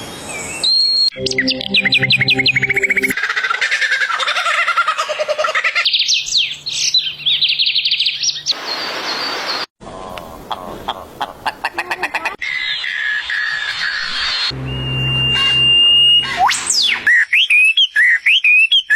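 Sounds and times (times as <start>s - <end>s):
birds chirping and trilling: 0.0s - 9.7s, 12.4s - 18.9s.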